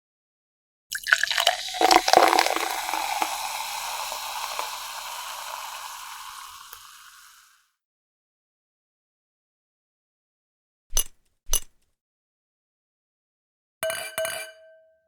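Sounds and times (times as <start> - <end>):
ice clinking in glass: 0.9 - 7.5
carbonation fizzing: 0.9 - 7.6
soda pouring: 0.9 - 7.6.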